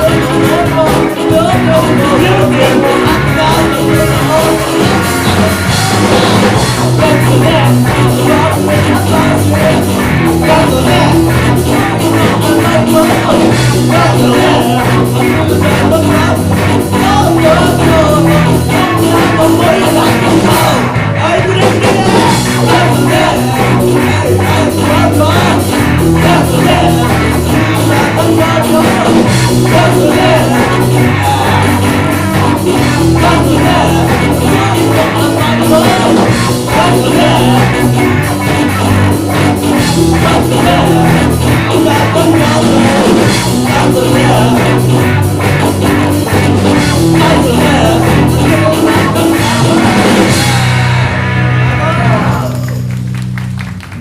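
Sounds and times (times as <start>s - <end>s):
person singing: 0.0s - 52.9s
live rock band playing: 0.0s - 54.0s.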